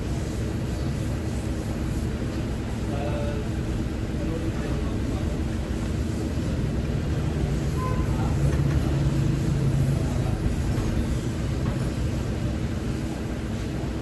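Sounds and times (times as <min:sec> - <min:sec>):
vehicle engine running: 0:05.8 - 0:13.1.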